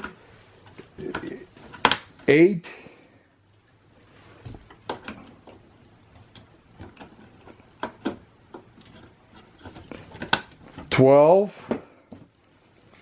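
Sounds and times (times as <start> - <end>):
sharp plastic clicks: 1.0 - 2.3.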